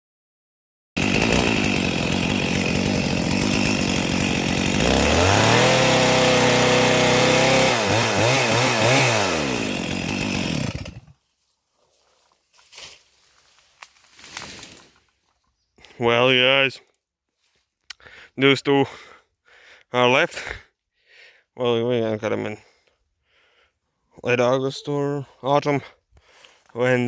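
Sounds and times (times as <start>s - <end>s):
chainsaw revving: 1.0s - 11.2s.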